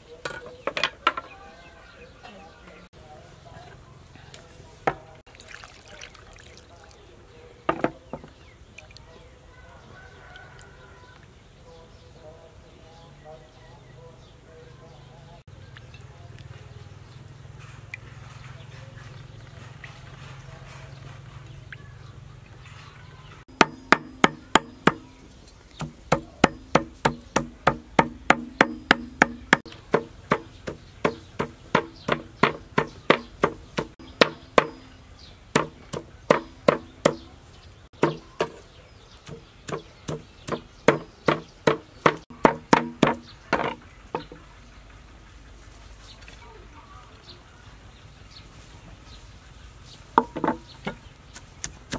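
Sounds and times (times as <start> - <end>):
knife chopping on wooden board: 23.5 - 25.1, 25.8 - 34.8, 35.6 - 37.3, 38.0 - 38.6, 39.2 - 43.8.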